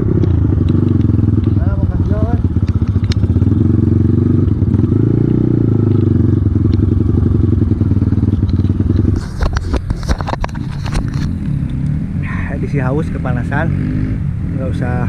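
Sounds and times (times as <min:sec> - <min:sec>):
off-road motorcycle engine running: 0:00.0 - 0:15.0
sharp knocks and clatters: 0:05.9 - 0:11.9.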